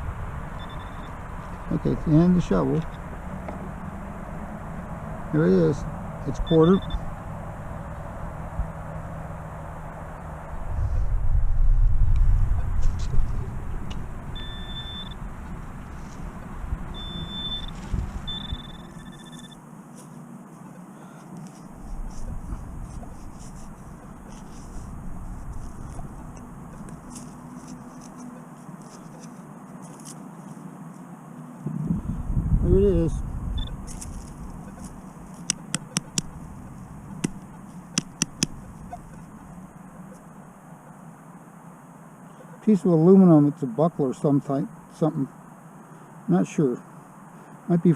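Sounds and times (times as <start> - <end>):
low outdoor rumble: 0.0 - 47.5
metal detector beeping: 0.6 - 1.2, 2.8 - 3.1, 6.3 - 7.1, 14.4 - 15.2, 16.9 - 19.6, 33.6 - 33.9, 34.6 - 36.4, 37.2 - 39.4
digging tools tapping metal: 35.4 - 36.3, 38.0 - 38.6.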